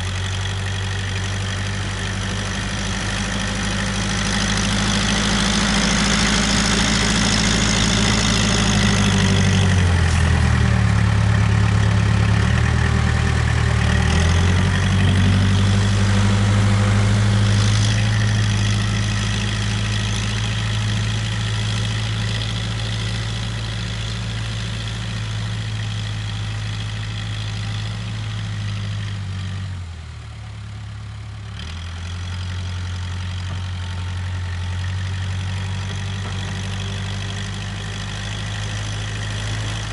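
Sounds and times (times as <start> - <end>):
backhoe diesel engine running: 0.0 - 39.9.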